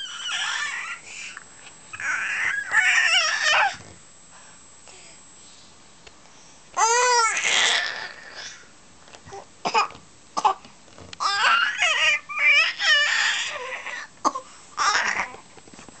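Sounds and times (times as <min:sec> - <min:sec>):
baby squealing: 0:00.0 - 0:01.0, 0:01.9 - 0:03.8, 0:11.2 - 0:14.0.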